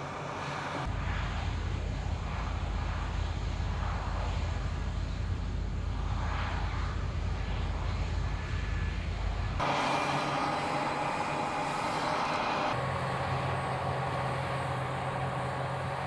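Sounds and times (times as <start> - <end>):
diesel engine deep rumble: 0.0 - 16.0
high-pitched machine running: 9.6 - 16.0.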